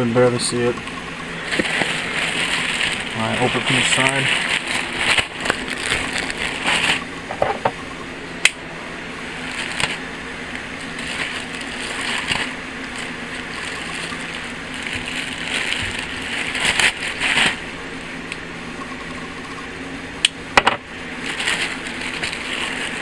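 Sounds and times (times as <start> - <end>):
packaging rustling and crinkling: 1.3 - 7.6, 9.2 - 18.0, 21.1 - 23.0.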